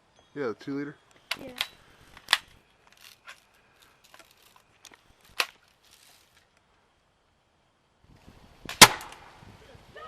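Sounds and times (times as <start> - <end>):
pellet gun shot: 8.7 - 9.3.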